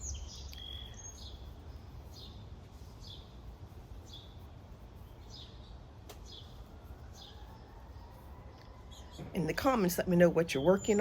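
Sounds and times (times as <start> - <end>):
small bird chirping: 0.0 - 9.3
low outdoor rumble: 0.0 - 11.0.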